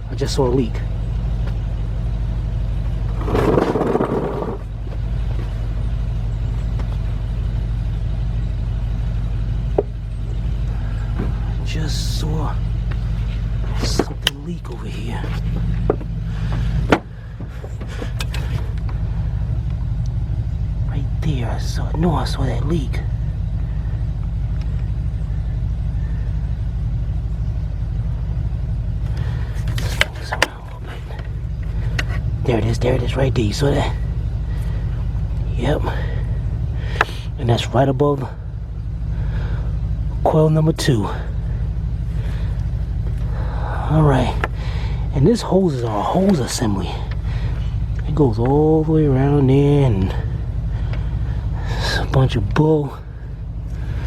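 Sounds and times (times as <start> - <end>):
engine idling: 0.0 - 54.0
low pulsing mechanical rumble: 0.0 - 54.0
brief rough noise: 3.2 - 4.7.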